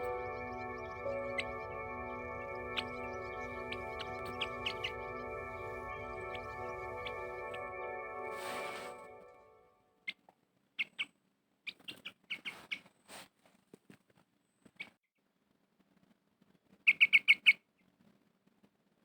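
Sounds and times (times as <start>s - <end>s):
small bird chirping: 0.0s - 7.3s, 10.8s - 12.9s, 16.8s - 17.6s.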